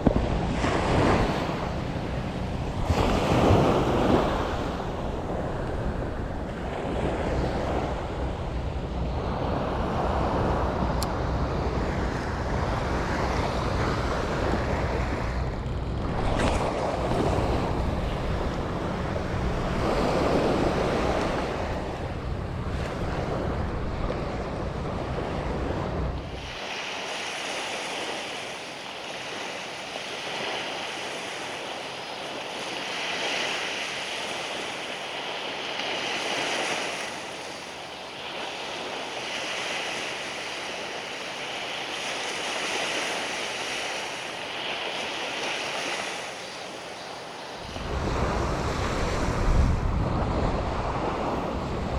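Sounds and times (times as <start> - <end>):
wind buffeting microphone: 0.0 - 26.8, 47.6 - 51.9
waves breaking on sand: 0.0 - 51.9.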